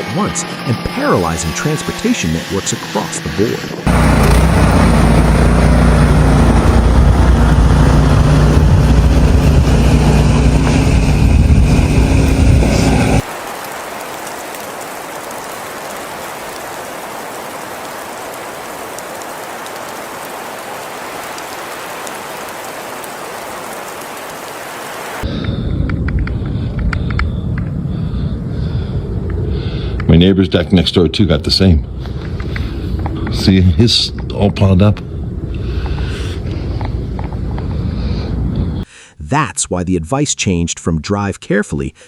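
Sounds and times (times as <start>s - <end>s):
loud engine humming: 0.0s - 13.3s.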